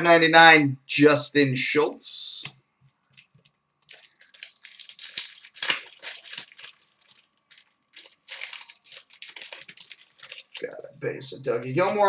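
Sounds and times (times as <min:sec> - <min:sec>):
wrapper crinkling: 0:03.0 - 0:10.9.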